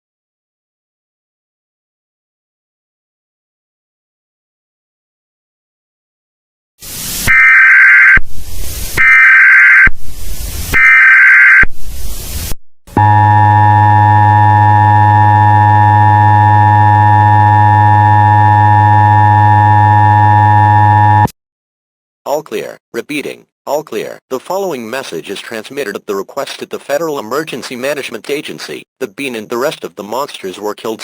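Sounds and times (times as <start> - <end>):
screeching digital data bursts: 10.8 - 11.7
steady attention tone: 13.0 - 21.3.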